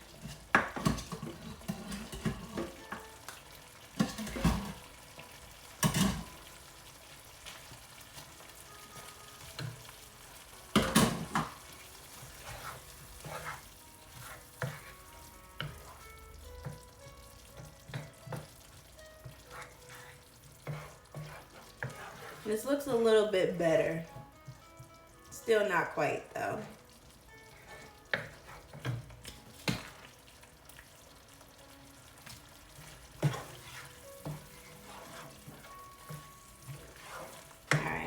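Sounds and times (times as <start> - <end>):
faint sizzle: 0.0 - 38.0
utensil stirring and scraping pan: 0.0 - 38.0.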